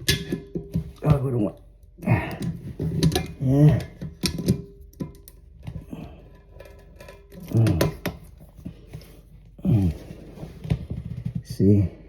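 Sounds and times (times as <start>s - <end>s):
man grunting: 9.6s - 10.1s.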